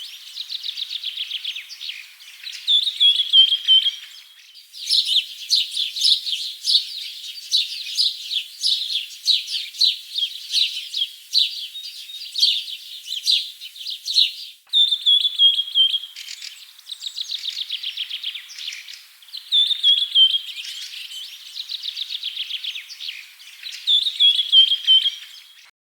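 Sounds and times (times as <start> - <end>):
small birds chirping: 0.0 - 25.7
bird trills and whistles: 4.8 - 18.8, 19.4 - 23.0, 23.6 - 25.7.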